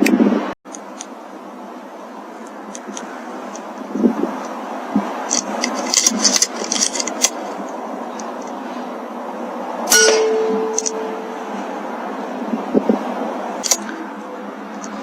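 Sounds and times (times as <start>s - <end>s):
clear ringing tone: 9.9s - 11.4s.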